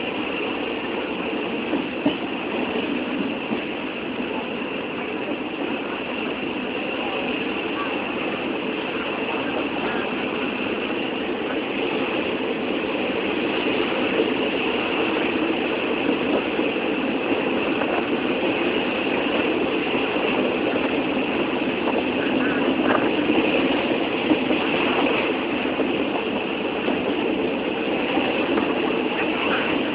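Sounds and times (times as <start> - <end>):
train noise: 0.0 - 29.9.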